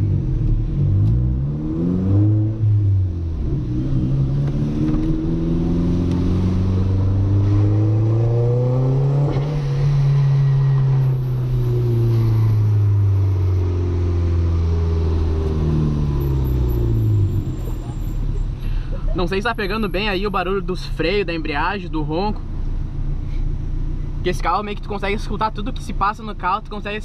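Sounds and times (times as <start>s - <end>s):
car engine revving: 0.0s - 18.8s.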